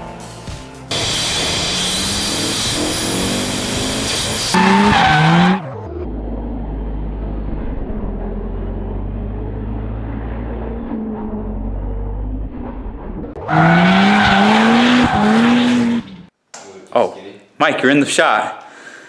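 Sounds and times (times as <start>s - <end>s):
car engine revving: 0.9s - 16.3s
low drone: 5.6s - 13.4s.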